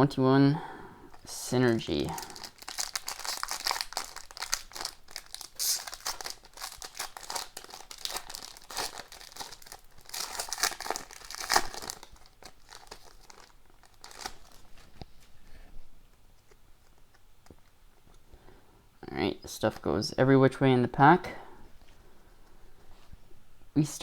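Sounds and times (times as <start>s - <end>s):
foil wrapper crinkling: 1.1s - 15.3s.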